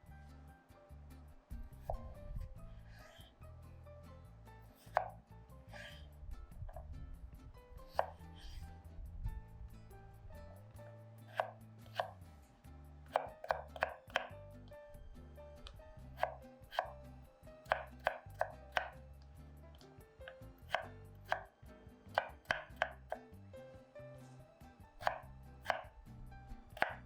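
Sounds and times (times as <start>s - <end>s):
knife chopping on cutting board: 1.8s - 2.1s, 4.8s - 5.2s, 5.8s - 6.0s, 7.9s - 8.6s, 11.3s - 12.2s, 13.1s - 14.4s, 16.2s - 17.0s, 17.6s - 19.0s, 20.3s - 21.5s, 22.1s - 23.2s, 25.0s - 25.9s, 26.8s - 27.0s.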